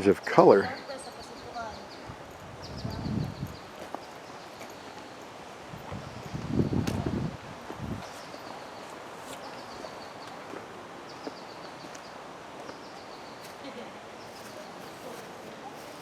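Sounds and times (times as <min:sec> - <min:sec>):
steady outdoor hiss: 0:00.0 - 0:16.0
bird chirping: 0:00.6 - 0:05.2, 0:08.0 - 0:16.0.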